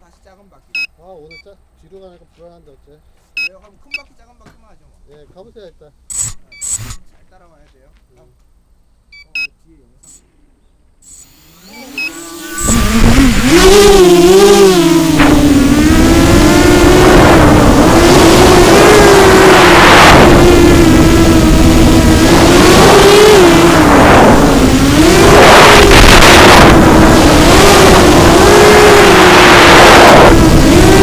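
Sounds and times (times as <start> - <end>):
quadcopter motors whining: 6.1 - 7.1, 11.0 - 31.0
rough rushing noise: 12.4 - 31.0.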